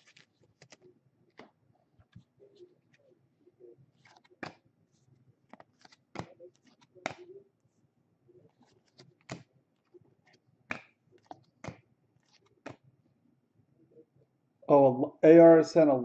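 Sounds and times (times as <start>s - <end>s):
trading cards clicking and rustling: 0.0s - 3.1s, 3.9s - 7.4s, 8.4s - 12.9s.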